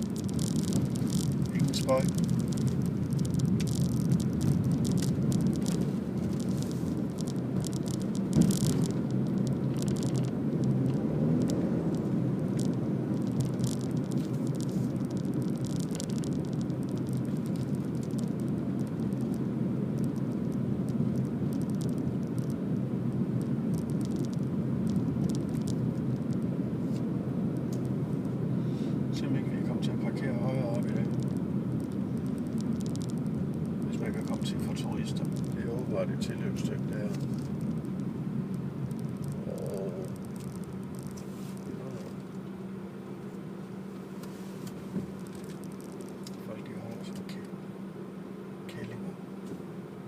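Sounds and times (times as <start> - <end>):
car cabin road noise: 0.0 - 50.0
faint clicks: 0.2 - 19.4, 30.2 - 38.1, 38.8 - 42.5.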